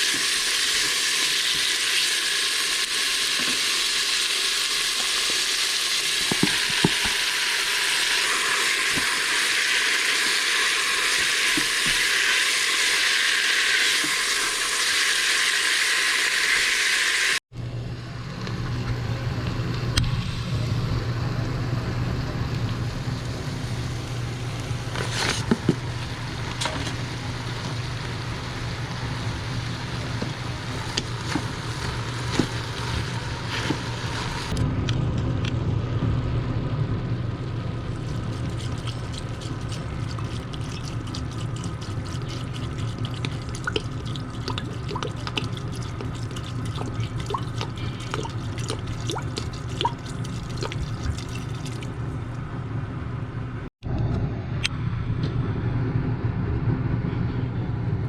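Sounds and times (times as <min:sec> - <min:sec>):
steady low hum: 0:17.5 - 0:58.0
running water: 0:37.9 - 0:52.1
water drips and crackles: 0:37.9 - 0:52.1.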